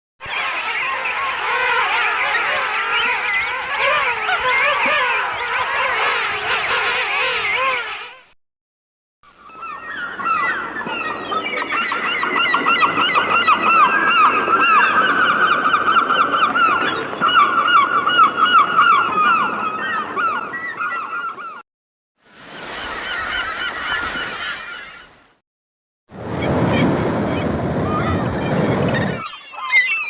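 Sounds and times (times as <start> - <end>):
flock of birds honking: 0.2 - 8.2, 9.5 - 21.6, 22.5 - 25.2.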